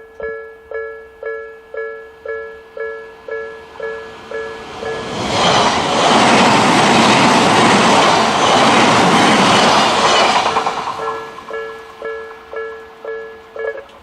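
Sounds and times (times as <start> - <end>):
crossing alarm two-tone ringing: 0.0 - 5.7, 10.6 - 13.9
train wheel and rail noise: 1.1 - 14.0.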